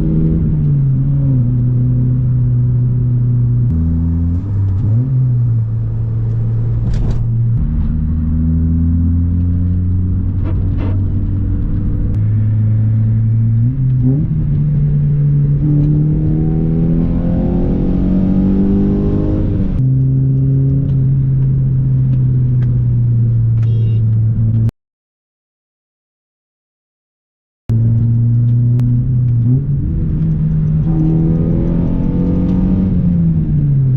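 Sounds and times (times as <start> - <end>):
car engine accelerating: 0.0 - 24.7, 27.7 - 33.9.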